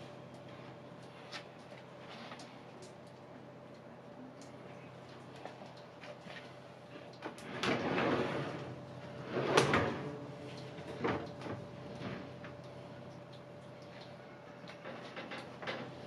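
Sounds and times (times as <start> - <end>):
drawer sliding: 7.4 - 10.1.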